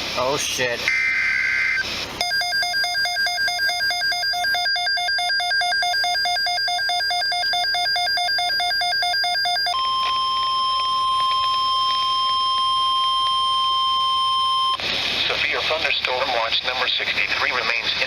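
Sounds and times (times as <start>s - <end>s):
steady warning alarm tone: 0.8s - 14.8s.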